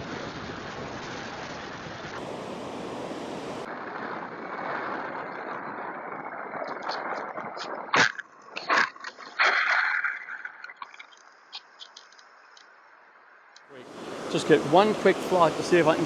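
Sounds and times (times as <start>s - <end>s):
ocean surf washing onto beach: 0.0s - 3.7s, 13.7s - 16.0s
wind on microphone: 0.0s - 8.1s, 13.8s - 16.0s.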